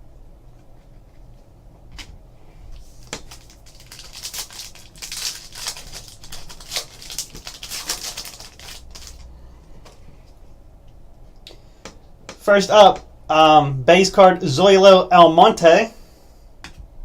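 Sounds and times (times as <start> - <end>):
wrapper crinkling and tearing: 2.8 - 9.3.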